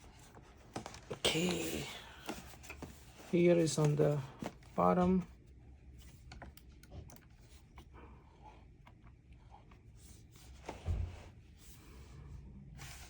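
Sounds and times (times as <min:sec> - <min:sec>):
handling and rustling: 0:00.0 - 0:07.8.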